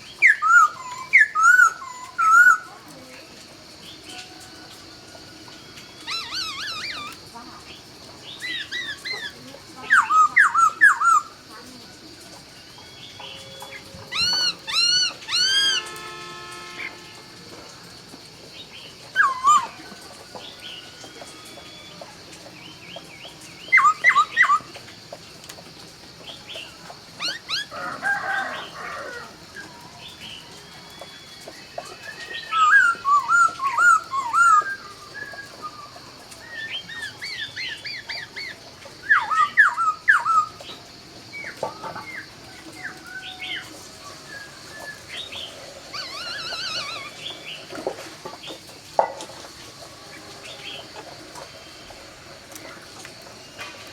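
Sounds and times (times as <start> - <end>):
bird singing whistles and twitters: 0.0 - 2.7, 6.0 - 7.3, 8.2 - 11.4, 12.9 - 16.0, 19.1 - 24.8, 30.2 - 40.8, 42.8 - 47.8
harsh bird call: 6.0 - 7.3, 13.2 - 17.3, 44.4 - 47.8.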